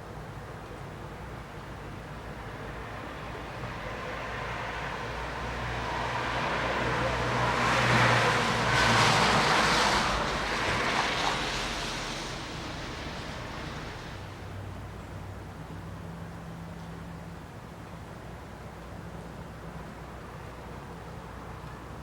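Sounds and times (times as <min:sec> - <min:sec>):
vehicle passing: 0:05.4 - 0:14.4.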